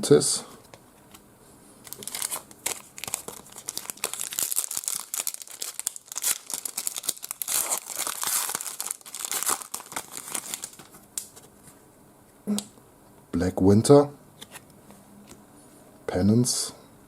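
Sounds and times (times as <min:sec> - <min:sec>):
card pack wrapper crinkling and tearing: 0:01.8 - 0:11.4.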